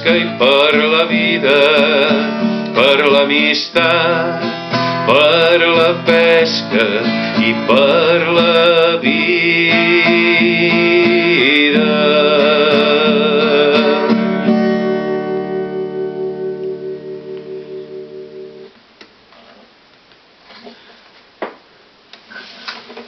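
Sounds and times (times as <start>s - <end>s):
guitar chord ringing out: 9.9s - 18.7s.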